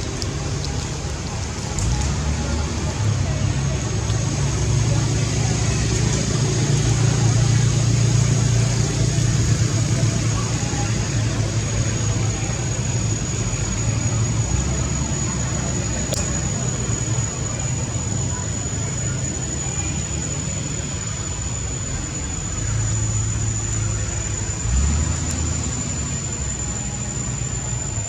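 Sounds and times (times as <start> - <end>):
high-pitched whine: 0.0 - 28.0
vehicle engine idling: 0.0 - 28.0.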